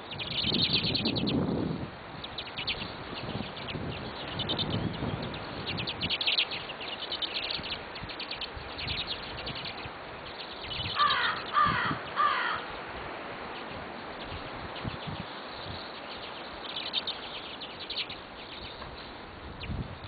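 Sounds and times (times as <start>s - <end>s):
small birds chirping: 0.0s - 20.0s
large bird calling loudly: 2.2s - 12.9s.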